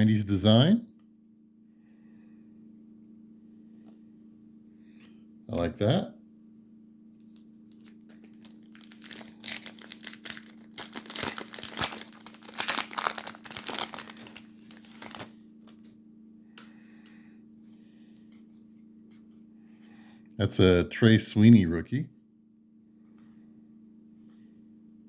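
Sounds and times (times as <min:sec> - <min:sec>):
foil wrapper crinkling and tearing: 0:07.7 - 0:15.9.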